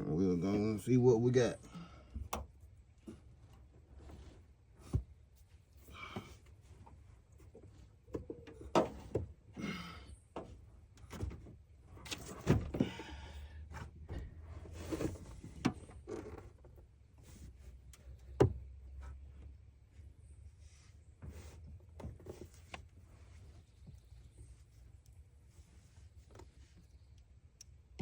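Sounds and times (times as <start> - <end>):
knocks and thunks: 18.4 - 18.6.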